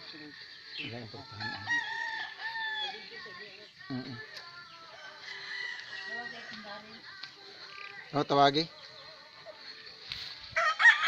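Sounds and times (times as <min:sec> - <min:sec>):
rooster crowing: 0:01.4 - 0:03.1, 0:04.9 - 0:06.8, 0:10.6 - 0:11.0.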